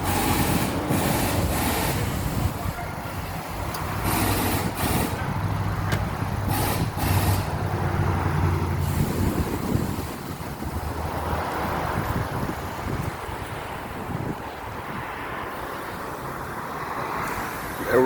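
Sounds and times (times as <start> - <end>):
heavy vehicle engine running: 0.0 - 14.4
road traffic noise: 0.0 - 18.0.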